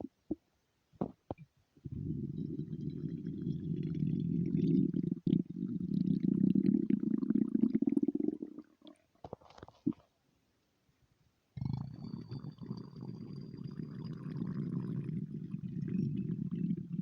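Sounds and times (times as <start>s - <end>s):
stomach gurgles: 0.0s - 0.4s, 1.0s - 10.1s, 11.6s - 17.0s
stomach rumbling: 0.0s - 0.4s, 1.0s - 10.1s, 11.6s - 17.0s.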